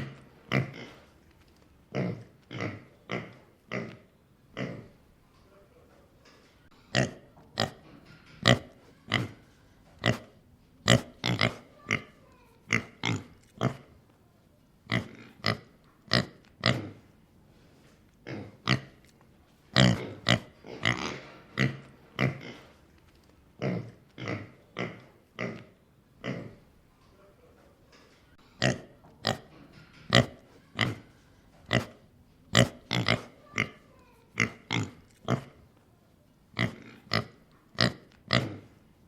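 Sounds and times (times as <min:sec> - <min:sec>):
pig snorting and grunting: 0:00.0 - 0:01.1, 0:01.9 - 0:05.0, 0:06.9 - 0:09.4, 0:10.0 - 0:14.0, 0:14.9 - 0:17.1, 0:18.2 - 0:19.1, 0:19.7 - 0:22.8, 0:23.6 - 0:26.7, 0:28.6 - 0:35.6, 0:36.5 - 0:38.8.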